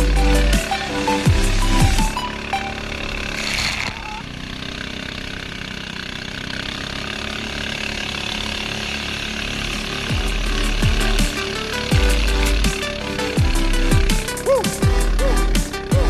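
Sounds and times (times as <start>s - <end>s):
music with deep bass beat: 0.0s - 2.5s, 10.0s - 16.0s
boat engine buzzing: 0.0s - 16.0s.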